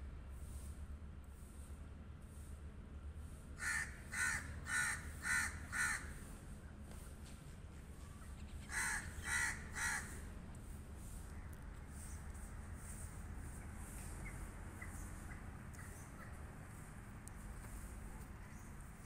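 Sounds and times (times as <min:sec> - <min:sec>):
crow cawing: 0:03.6 - 0:06.2, 0:08.6 - 0:10.2.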